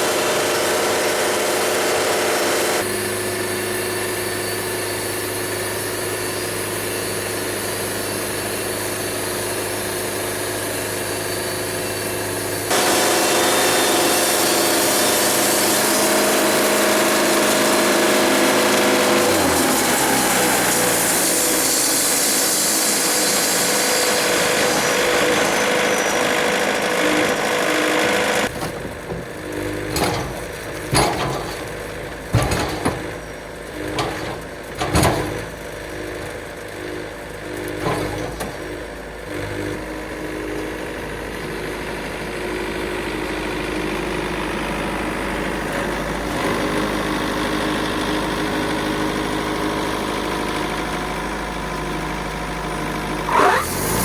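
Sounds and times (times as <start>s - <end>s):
sawmill running: 0.0s - 54.0s
saw blade hissing in wood: 12.7s - 28.3s
sharp knocks and clunks: 28.0s - 35.6s.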